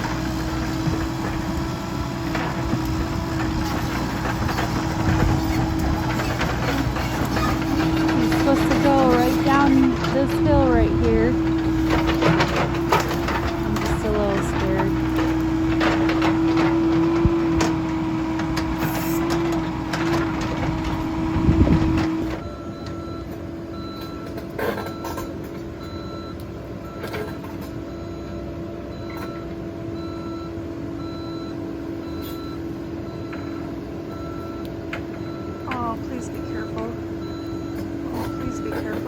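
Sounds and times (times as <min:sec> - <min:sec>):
excavator engine humming: 0:00.0 - 0:39.0
travel alarm beeping: 0:02.7 - 0:15.4, 0:22.4 - 0:39.0.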